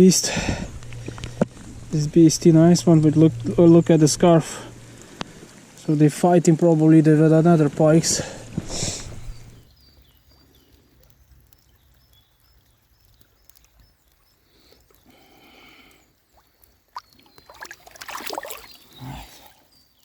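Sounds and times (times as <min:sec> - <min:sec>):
water splashing: 0:16.3 - 0:19.6.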